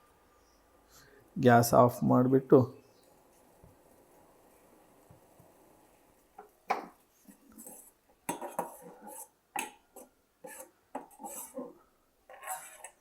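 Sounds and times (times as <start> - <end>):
pot and utensils clinking: 7.6 - 11.6.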